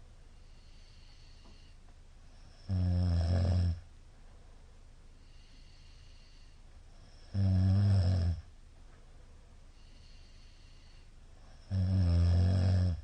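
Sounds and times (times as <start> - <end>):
man snoring loudly: 2.5 - 3.8, 7.0 - 8.4, 11.6 - 13.0.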